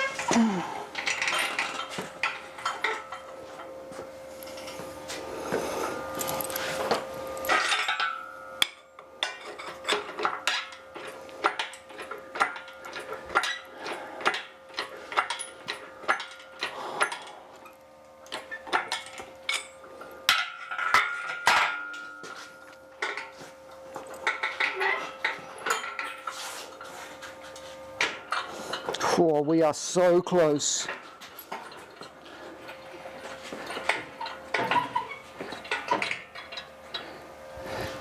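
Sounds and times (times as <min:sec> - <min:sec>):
hoist chain clinking: 0:00.0 - 0:03.3, 0:30.8 - 0:37.1.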